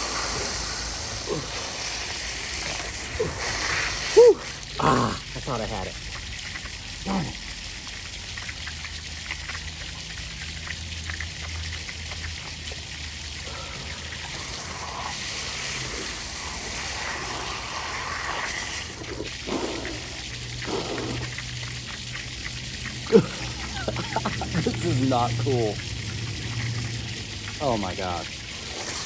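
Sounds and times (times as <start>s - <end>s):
water spraying from pipe: 0.0s - 29.0s.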